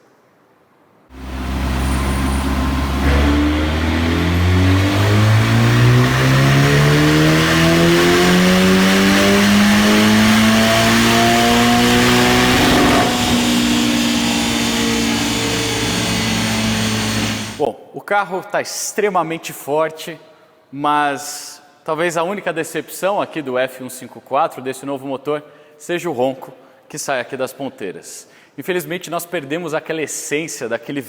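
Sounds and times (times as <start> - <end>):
car engine accelerating: 1.1 - 17.6.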